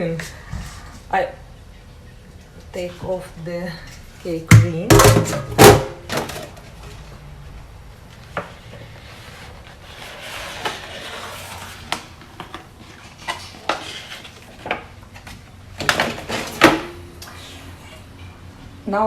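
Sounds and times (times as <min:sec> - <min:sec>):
kitchenware clinking and knocking: 0:04.5 - 0:06.6
soft scraping: 0:06.8 - 0:14.6.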